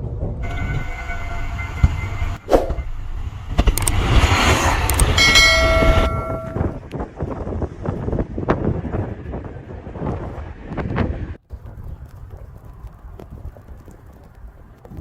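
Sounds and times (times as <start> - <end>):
low rumbling noise: 0.0 - 7.2
horn blasts: 0.4 - 3.4, 4.9 - 6.8.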